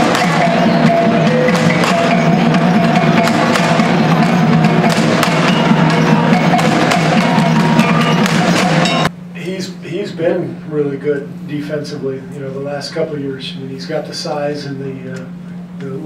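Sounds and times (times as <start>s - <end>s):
bell-like tones: 0.0s - 9.1s
wooden knocking percussion music: 0.0s - 9.1s.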